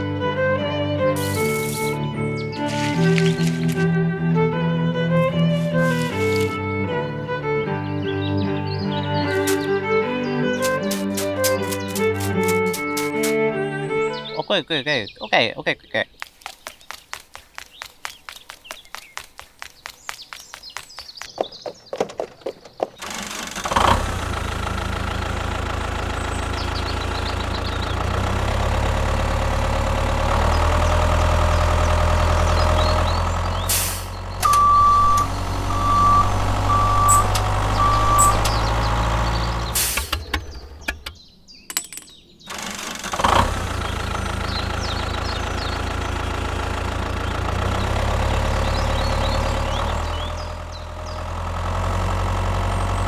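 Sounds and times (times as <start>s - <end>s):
model tractor engine sound: 0.0s - 15.1s, 22.9s - 53.0s
short high beeps: 34.4s - 38.5s.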